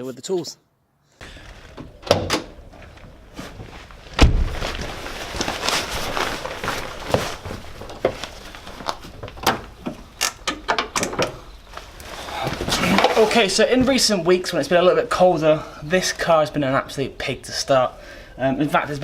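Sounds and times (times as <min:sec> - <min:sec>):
heavy thump: 0:04.1 - 0:04.8
sharp clicks and knocks: 0:08.9 - 0:11.4.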